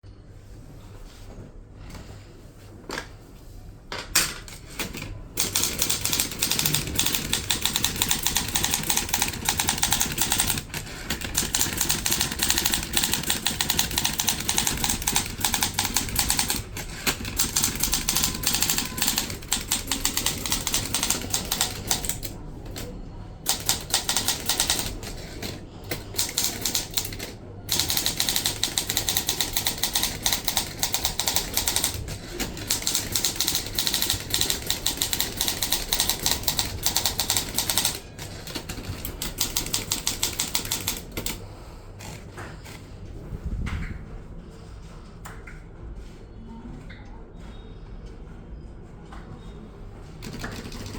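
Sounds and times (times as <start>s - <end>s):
typewriter keys clattering: 4.1s - 42.9s, 50.2s - 50.9s.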